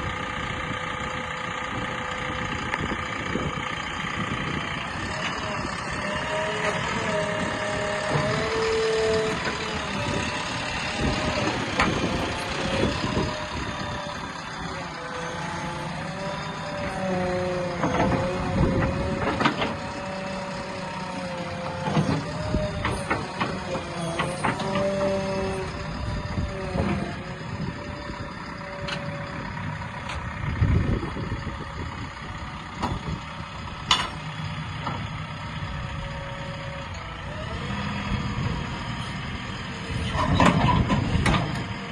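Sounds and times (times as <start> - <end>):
backhoe loader engine running: 0.0 - 41.9.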